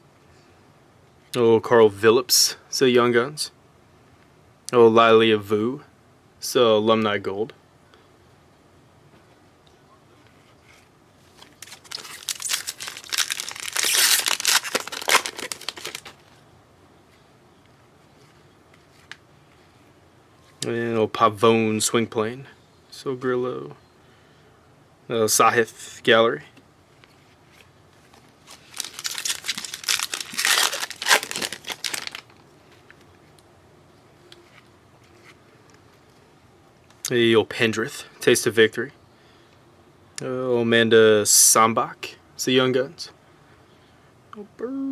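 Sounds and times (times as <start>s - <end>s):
foil wrapper crinkling and tearing: 11.3s - 16.4s, 28.4s - 33.0s.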